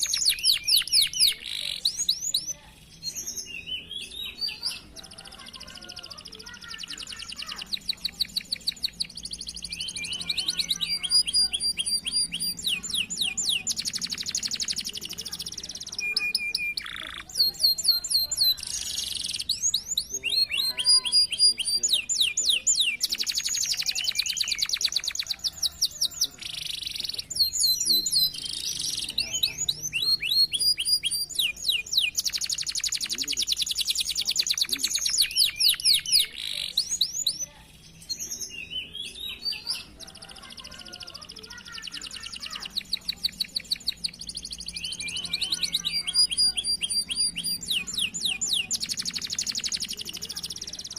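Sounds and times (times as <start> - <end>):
canary singing trills: 0.0 - 50.9.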